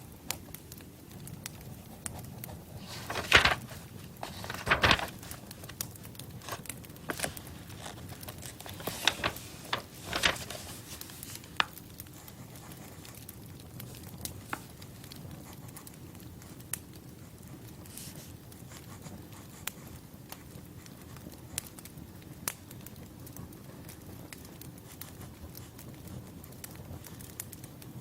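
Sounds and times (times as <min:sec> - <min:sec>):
crackling and crinkling: 0:00.0 - 0:28.0
rustling bursts: 0:02.7 - 0:11.8.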